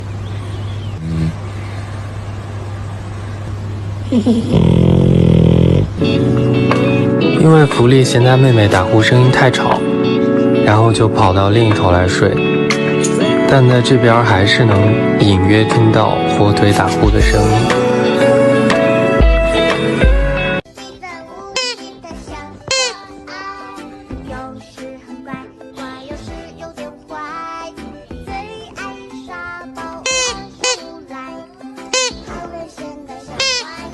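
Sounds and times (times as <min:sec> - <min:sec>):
pet snoring: 0:01.0 - 0:01.4, 0:04.1 - 0:06.3
light playful music with plucked notes: 0:06.0 - 0:33.9.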